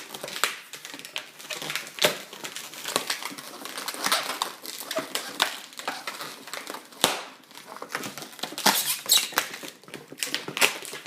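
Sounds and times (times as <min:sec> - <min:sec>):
balloons squeaking and rubbing: 0:03.2 - 0:06.6, 0:08.3 - 0:09.7.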